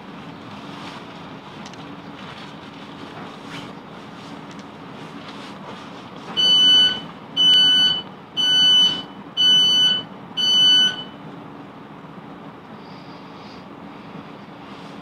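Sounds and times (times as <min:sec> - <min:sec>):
train humming: 0:00.0 - 0:15.0
high-pitched door warning beeps: 0:06.4 - 0:11.2.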